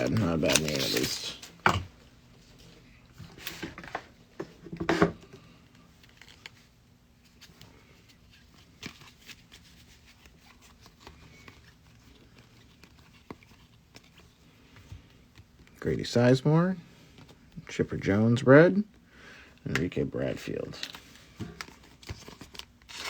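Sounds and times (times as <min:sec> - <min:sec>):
trading cards rustling and tapping: 0:00.0 - 0:01.9.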